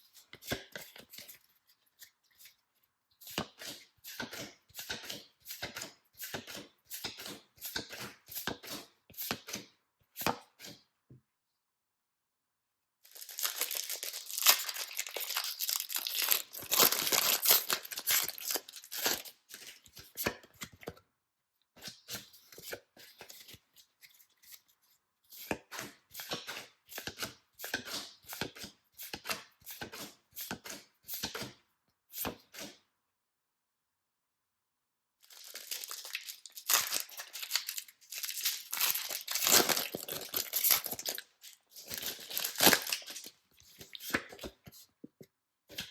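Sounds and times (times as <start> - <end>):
wrapping crinkling: 13.0 - 19.9, 35.2 - 44.0
packaging tearing: 13.1 - 19.8, 35.2 - 43.4.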